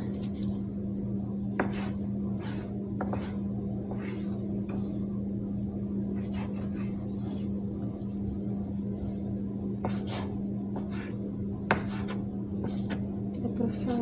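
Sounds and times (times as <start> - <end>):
low hum: 0.0 - 14.0
knife cutting on a board: 1.6 - 4.9, 9.8 - 13.1.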